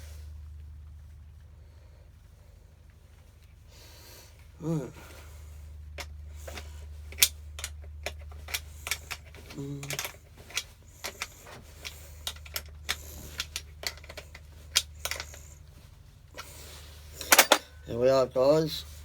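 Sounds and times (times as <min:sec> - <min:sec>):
steady low hum: 0:00.0 - 0:19.0
metal tools clinking: 0:06.5 - 0:15.6, 0:16.4 - 0:18.0.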